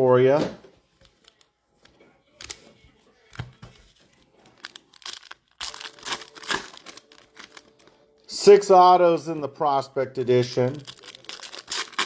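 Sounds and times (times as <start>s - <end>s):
plastic packaging crinkling: 4.1s - 8.3s, 10.1s - 12.0s.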